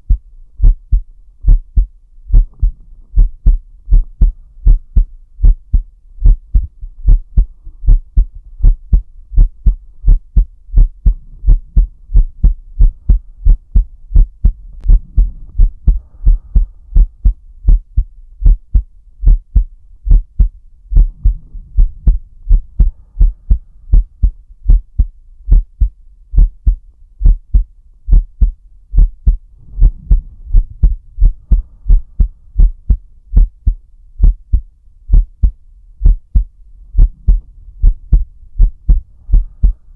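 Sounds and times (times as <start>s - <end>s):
heartbeat thumps: 0.0s - 39.9s
slow deep breaths: 6.6s - 9.0s, 10.8s - 17.4s, 21.0s - 24.4s, 29.3s - 33.0s, 36.4s - 39.9s.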